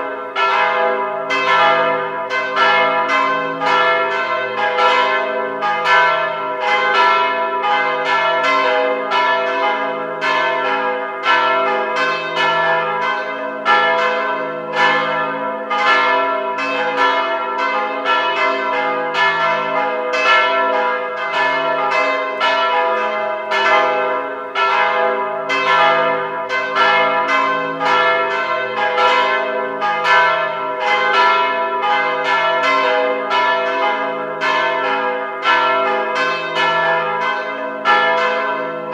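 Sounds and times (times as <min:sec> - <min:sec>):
church bells ringing: 0:00.0 - 0:38.9.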